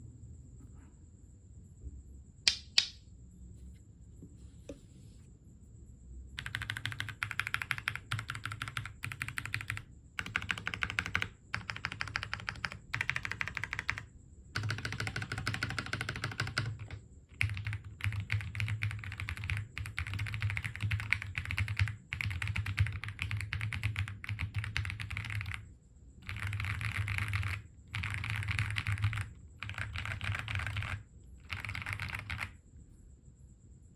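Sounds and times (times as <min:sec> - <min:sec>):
sharp click: 0:02.5 - 0:03.0
mechanical keyboard typing: 0:06.4 - 0:32.6.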